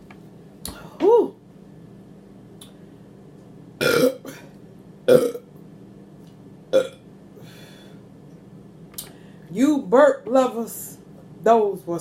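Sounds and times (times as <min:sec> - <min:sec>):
woman burping loudly: 0:03.8 - 0:04.5, 0:05.1 - 0:05.4, 0:06.8 - 0:07.0.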